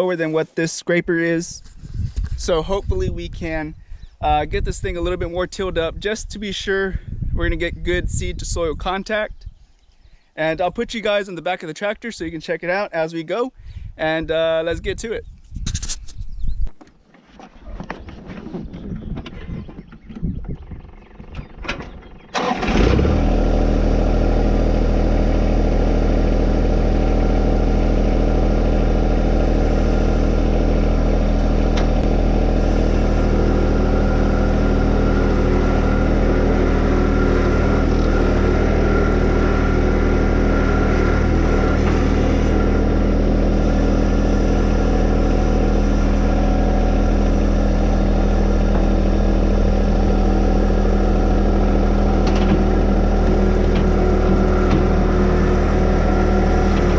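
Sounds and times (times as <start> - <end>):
tractor engine running: 17.0 - 56.9.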